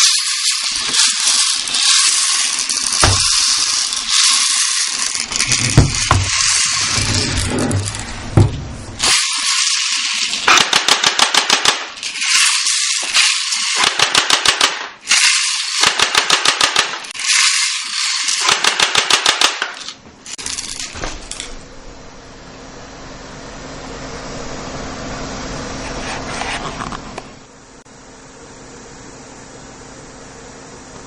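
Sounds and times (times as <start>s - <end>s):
airsoft gun firing bursts: 10.5s - 12.0s, 13.8s - 15.0s, 15.8s - 17.1s, 18.4s - 19.8s.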